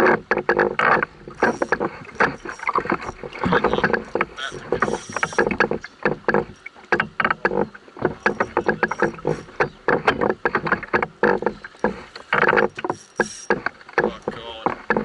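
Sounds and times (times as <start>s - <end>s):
knocks and clatter in a canoe: 0.0s - 15.0s.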